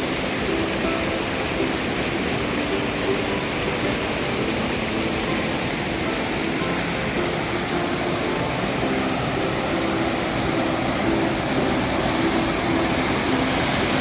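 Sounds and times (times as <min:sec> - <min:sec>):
stream water rushing: 0:00.0 - 0:14.0.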